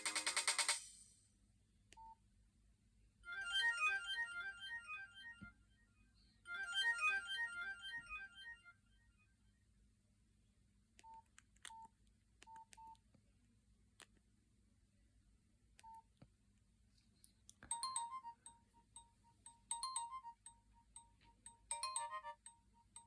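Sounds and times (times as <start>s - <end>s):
electronic beeping ringtone: 3.3s - 5.4s, 6.5s - 8.6s, 17.7s - 23.0s.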